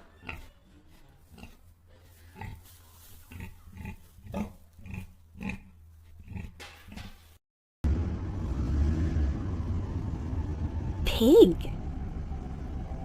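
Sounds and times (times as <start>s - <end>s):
pig grunting: 1.3s - 2.7s, 3.3s - 7.2s.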